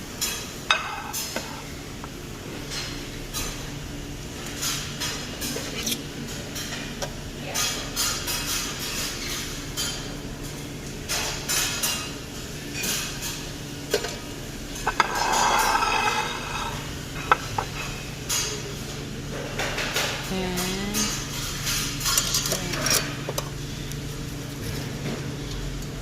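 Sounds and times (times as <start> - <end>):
utensils and dishes clattering: 0.2 - 1.6, 4.4 - 23.6.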